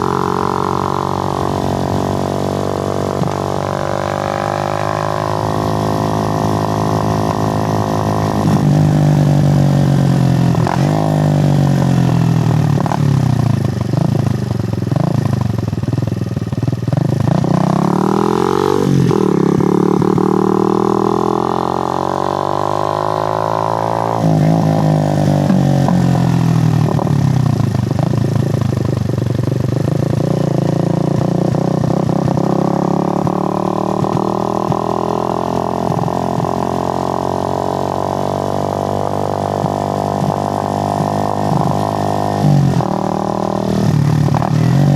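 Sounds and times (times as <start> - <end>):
motorcycle engine running: 0.0 - 44.9.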